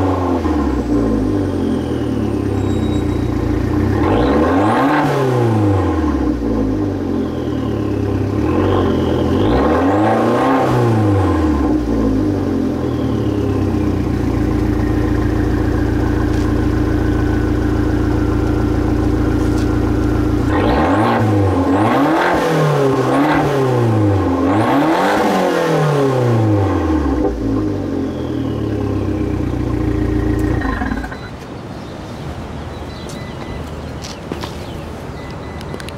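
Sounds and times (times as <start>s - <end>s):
car engine idling and revving: 0.0s - 31.6s.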